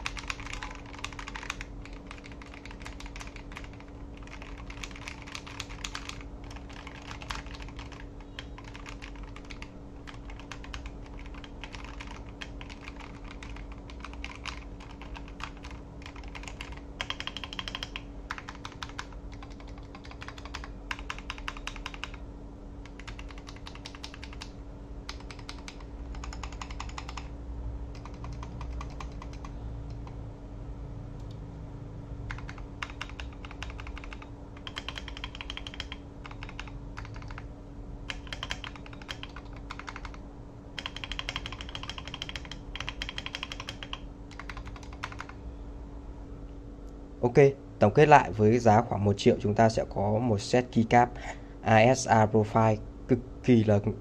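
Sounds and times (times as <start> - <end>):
mechanical keyboard typing: 0.0 - 22.2, 22.8 - 27.3, 27.9 - 30.2, 32.3 - 37.5, 38.1 - 40.2, 40.8 - 45.4
faint steady hum: 0.0 - 54.0.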